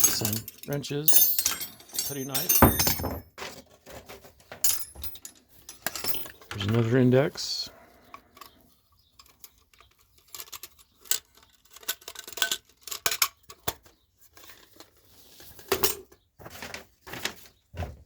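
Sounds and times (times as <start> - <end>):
hand tools clinking: 0.0 - 3.4, 4.6 - 6.9.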